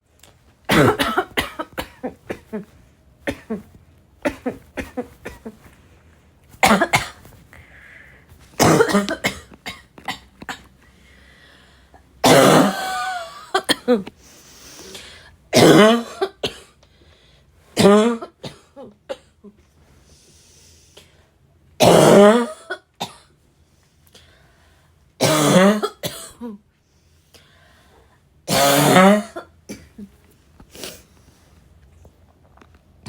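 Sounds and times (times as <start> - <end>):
girl coughing: 0.7 - 2.7, 3.3 - 5.7, 6.6 - 7.4, 8.6 - 10.6, 12.2 - 14.0, 15.6 - 16.7, 17.8 - 19.4, 25.2 - 26.6
breaths between coughs: 6.5 - 9.6.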